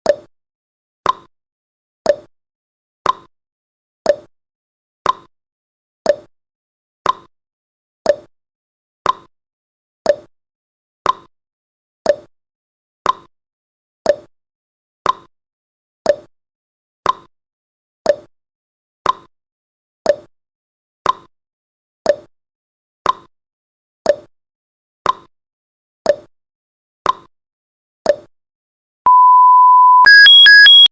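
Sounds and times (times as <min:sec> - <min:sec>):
high beep tone: 0:29.1 - 0:30.9.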